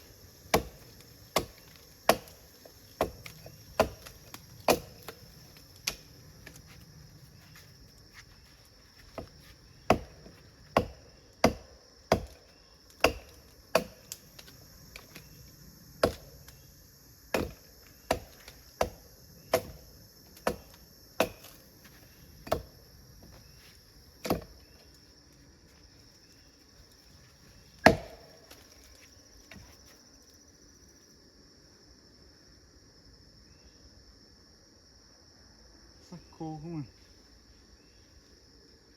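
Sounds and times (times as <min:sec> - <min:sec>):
insects droning: 0:00.0 - 0:38.9
blade chopping wood: 0:00.5 - 0:06.6, 0:09.9 - 0:15.3, 0:16.0 - 0:16.5, 0:17.3 - 0:19.8, 0:20.4 - 0:21.6, 0:22.4 - 0:22.8, 0:24.2 - 0:24.6, 0:27.8 - 0:28.6.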